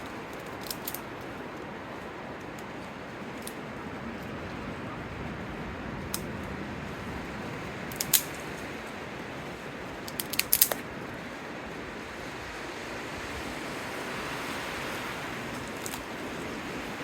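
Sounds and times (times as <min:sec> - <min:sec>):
rushing wind: 0:00.0 - 0:17.0
sharp clicks and snaps: 0:07.9 - 0:08.6, 0:10.1 - 0:10.8.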